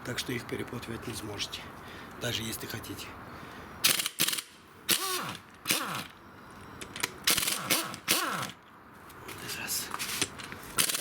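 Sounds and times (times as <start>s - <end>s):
pneumatic impact wrench bursts: 3.8s - 6.2s, 7.2s - 8.6s, 10.8s - 11.0s.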